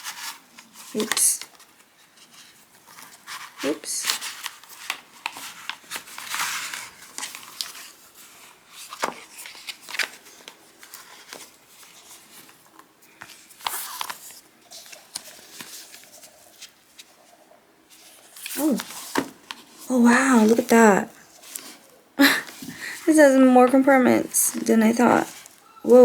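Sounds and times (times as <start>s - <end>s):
packaging crinkling and rustling: 0.0s - 17.3s.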